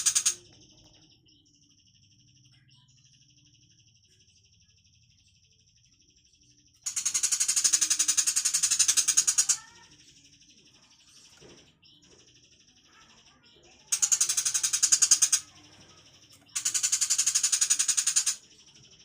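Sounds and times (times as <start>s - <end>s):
bird rattling chatter: 0.0s - 0.4s, 6.9s - 9.9s, 13.9s - 15.7s, 16.4s - 18.4s.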